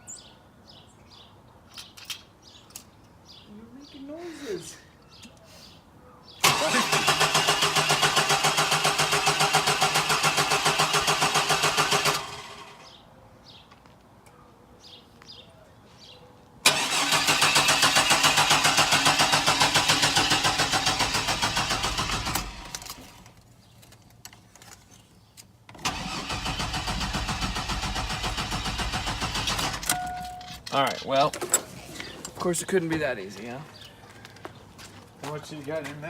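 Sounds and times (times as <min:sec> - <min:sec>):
engine cranking without starting: 0:06.4 - 0:12.8, 0:16.6 - 0:23.4, 0:25.7 - 0:30.1.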